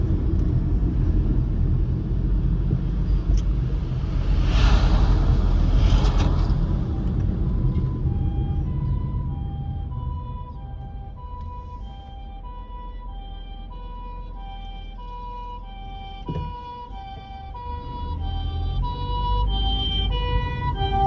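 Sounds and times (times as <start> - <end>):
low traffic rumble: 0.0 - 21.0
vehicle passing loudly: 2.9 - 8.5
ambulance two-tone siren: 7.1 - 21.0.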